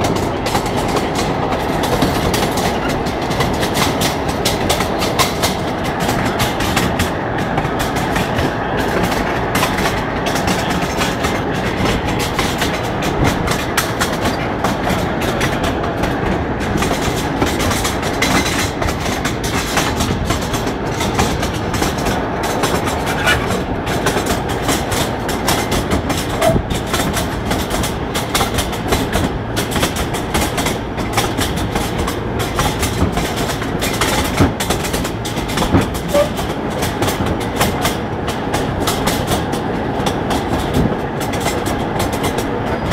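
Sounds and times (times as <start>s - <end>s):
trolley wheels clattering on rails: 0.0s - 42.9s
high wheel squeaks: 23.0s - 23.6s, 26.3s - 26.7s, 35.9s - 36.5s.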